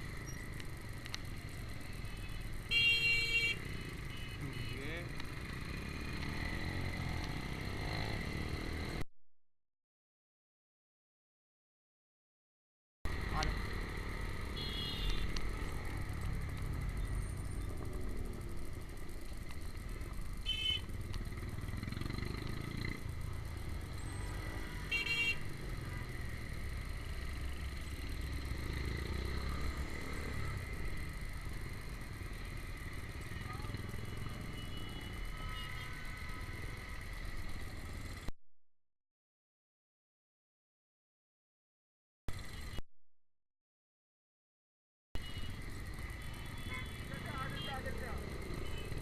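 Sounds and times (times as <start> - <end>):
motorcycle engine: 3.4 - 9.0, 13.1 - 38.2.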